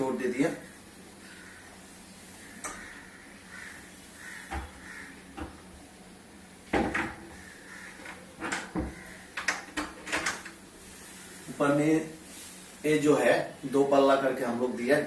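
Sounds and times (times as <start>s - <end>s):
crow cawing: 1.2s - 5.6s, 7.2s - 9.5s.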